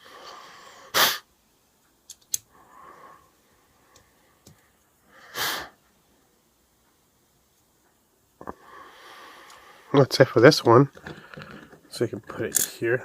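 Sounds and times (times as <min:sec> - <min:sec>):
person sniffing sharply: 0:00.0 - 0:01.3, 0:05.2 - 0:05.8
soft breathing: 0:02.5 - 0:06.3, 0:08.4 - 0:10.0, 0:11.0 - 0:11.9.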